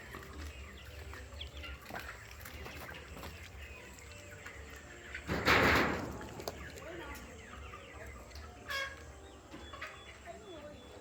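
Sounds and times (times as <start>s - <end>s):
chickens chirping and clucking: 0.0s - 11.0s.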